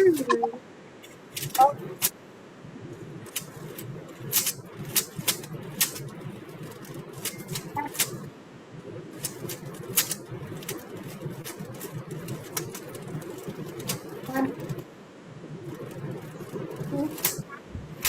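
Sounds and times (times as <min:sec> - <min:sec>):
steady background hum: 0:00.0 - 0:18.0
plastic cube clicking and clacking: 0:01.3 - 0:01.8, 0:03.3 - 0:08.2, 0:09.2 - 0:14.8.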